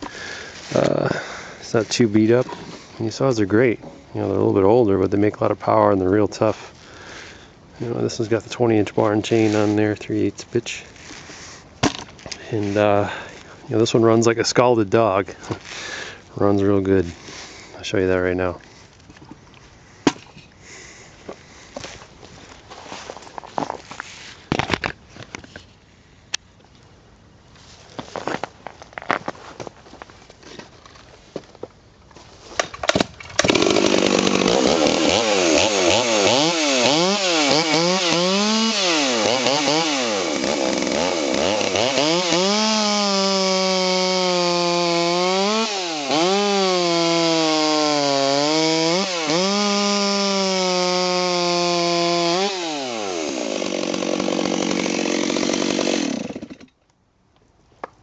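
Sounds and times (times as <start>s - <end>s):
chainsaw cutting wood: 32.7s - 56.8s
chainsaw pull-start: 32.8s - 56.8s
chainsaw revving: 33.4s - 56.7s.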